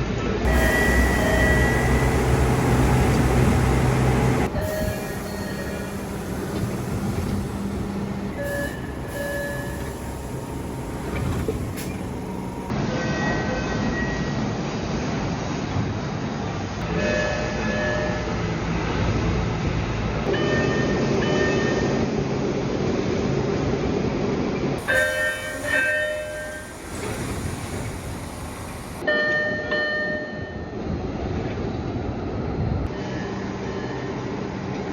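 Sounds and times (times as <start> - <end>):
standing train hum: 0.0 - 34.9
train door chimes: 0.5 - 12.7, 24.8 - 30.7.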